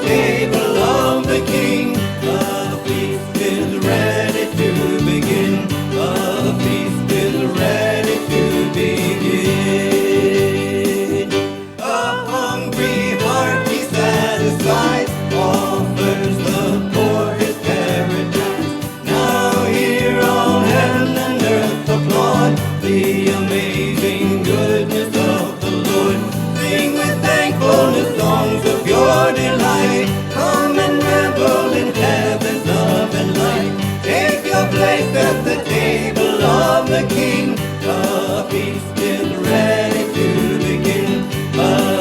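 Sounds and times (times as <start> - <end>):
choir singing: 0.0 - 42.0
instrumental accompaniment: 0.0 - 42.0.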